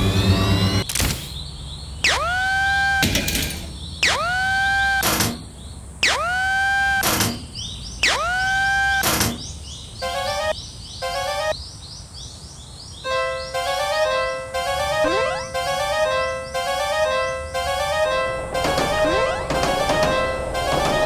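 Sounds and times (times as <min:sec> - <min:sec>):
quick rising blips: 0:08.0 - 0:09.1, 0:13.6 - 0:21.0
cartoon swooping tone: 0:10.0 - 0:11.6, 0:13.1 - 0:20.8.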